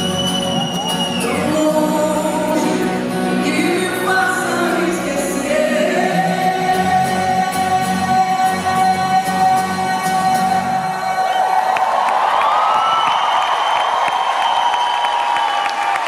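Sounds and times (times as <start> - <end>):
live band playing: 0.0 - 11.6
person singing: 1.1 - 11.8.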